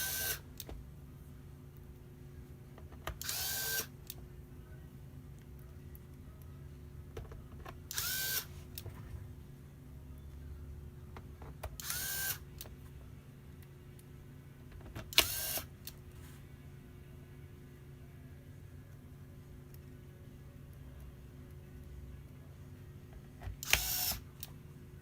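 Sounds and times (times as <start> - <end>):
electric screwdriver whining: 11.8 - 12.4, 23.6 - 24.2.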